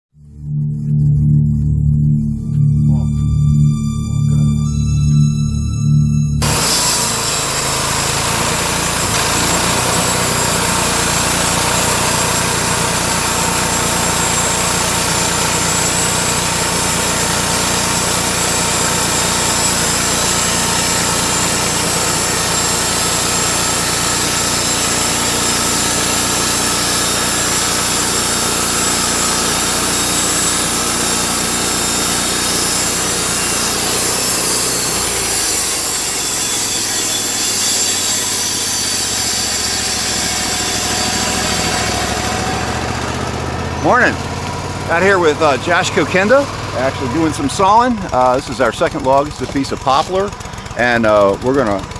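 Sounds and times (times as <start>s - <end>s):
band saw sawing log: 6.4s - 51.9s.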